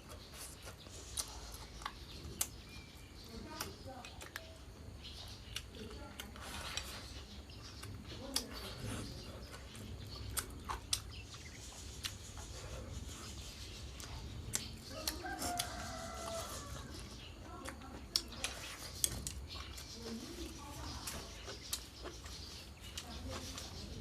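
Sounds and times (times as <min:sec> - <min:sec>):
rooster crowing: 0:14.9 - 0:17.0.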